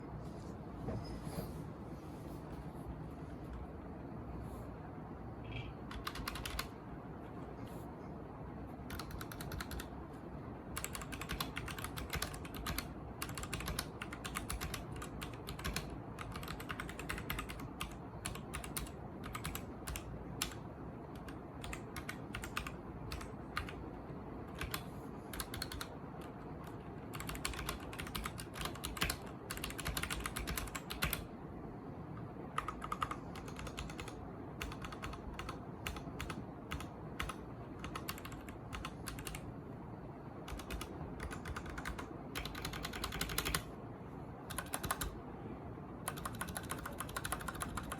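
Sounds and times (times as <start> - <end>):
mechanical keyboard typing: 5.4 - 6.8, 8.8 - 10.0, 10.7 - 23.8, 24.4 - 31.3, 32.5 - 39.5, 40.4 - 43.7, 44.4 - 45.2, 46.0 - 47.9.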